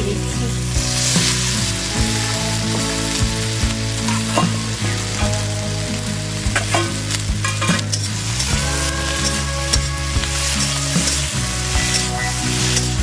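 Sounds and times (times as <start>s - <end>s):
food sizzling in hot oil: 0.0s - 13.0s
spatula scraping a pan: 6.4s - 13.0s.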